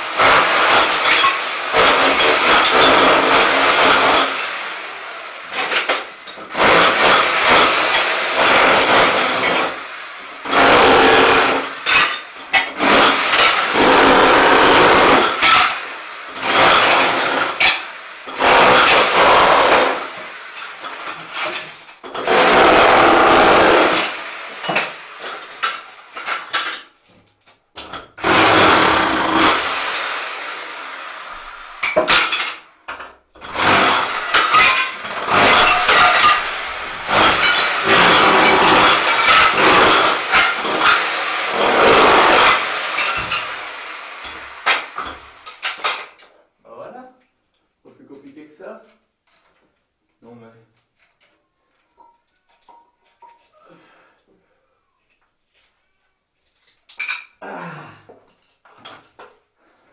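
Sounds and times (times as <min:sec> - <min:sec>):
rotary hammer chiselling tiles: 0:00.2 - 0:04.5, 0:05.5 - 0:09.8, 0:10.4 - 0:26.8, 0:27.8 - 0:30.0, 0:31.8 - 0:43.6.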